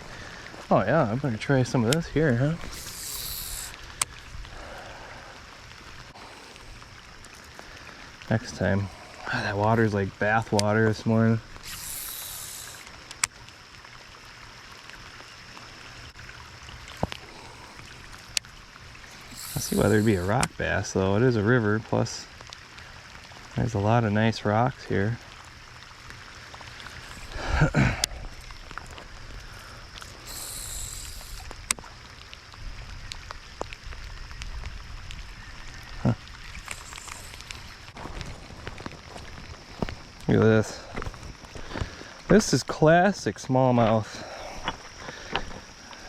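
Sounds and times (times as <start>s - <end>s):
faint running river water: 0.0s - 46.0s
brief hiss: 2.7s - 3.7s, 11.6s - 12.8s, 19.3s - 20.3s, 30.2s - 31.5s
wind rumble on microphone: 32.5s - 42.1s.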